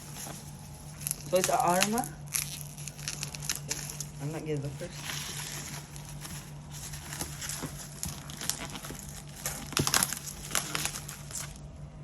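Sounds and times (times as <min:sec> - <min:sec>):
packaging crinkling and rustling: 0:00.0 - 0:11.7.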